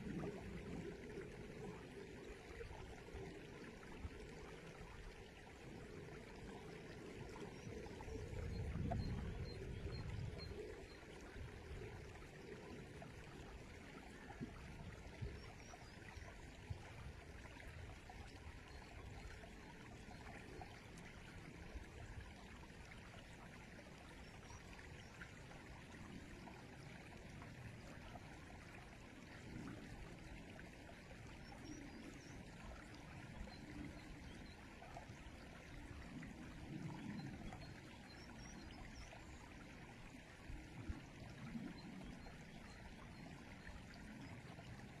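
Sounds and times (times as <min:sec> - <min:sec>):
river water flowing: 0:00.0 - 0:45.0.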